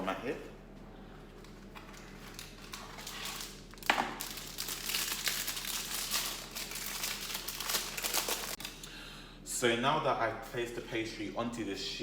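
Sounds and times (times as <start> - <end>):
baking paper crinkling: 1.6 - 8.9
pastry sheet cracking: 2.0 - 8.8.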